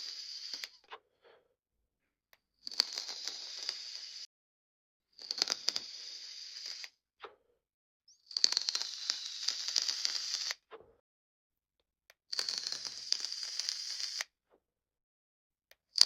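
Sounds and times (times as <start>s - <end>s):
e-cigarette hissing and crackling: 0.0s - 0.8s, 2.6s - 4.3s, 5.2s - 7.0s, 8.3s - 10.6s, 12.4s - 14.3s.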